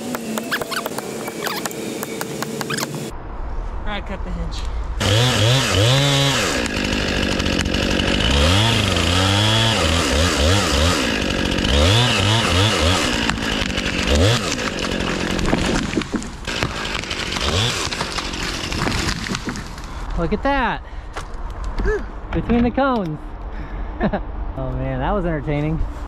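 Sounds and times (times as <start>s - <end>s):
chainsaw cutting and revving: 5.0s - 20.0s
rough irregular noise: 13.0s - 20.3s.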